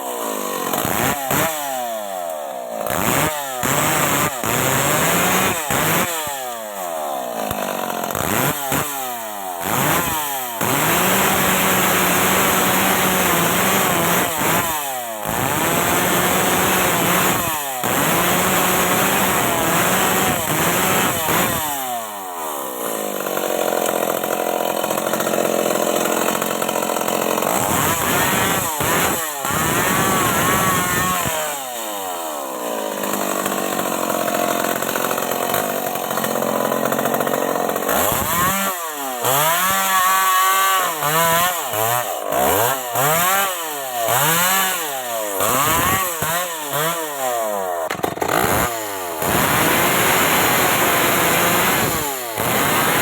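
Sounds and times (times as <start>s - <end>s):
chainsaw revving: 0.0s - 53.0s.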